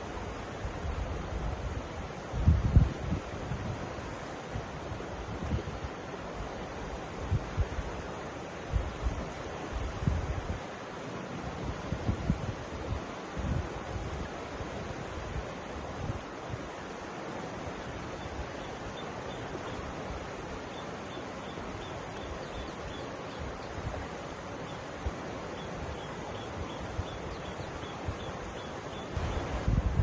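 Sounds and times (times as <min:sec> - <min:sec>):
river water rushing: 0:00.0 - 0:30.0
wind rumble on microphone: 0:00.5 - 0:10.7, 0:11.3 - 0:16.8, 0:25.0 - 0:30.0.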